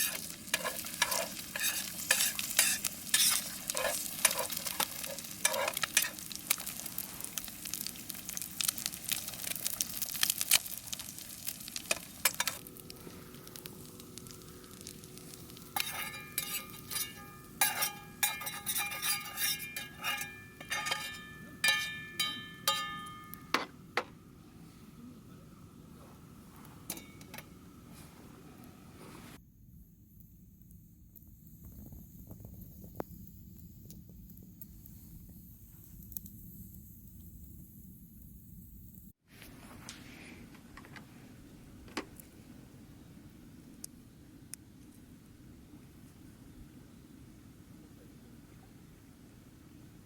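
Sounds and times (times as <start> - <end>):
meat sizzling in a frying pan: 0.0 - 19.5.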